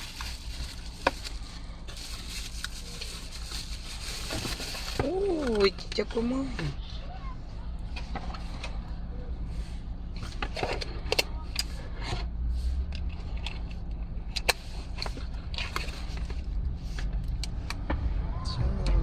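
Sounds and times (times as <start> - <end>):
small clicks and scrapes: 12.9 - 17.8
low rumble: 14.9 - 19.0.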